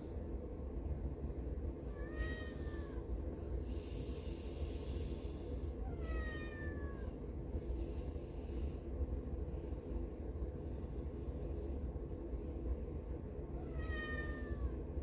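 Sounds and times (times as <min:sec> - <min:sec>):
cat meowing: 0:05.9 - 0:07.2, 0:13.6 - 0:14.8
steady low rumble: 0:07.0 - 0:15.0.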